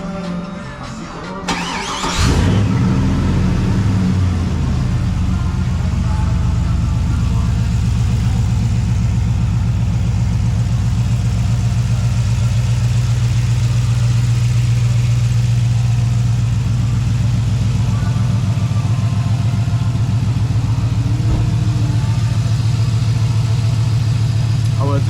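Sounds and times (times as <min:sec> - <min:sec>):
engine idling: 0:01.5 - 0:25.0.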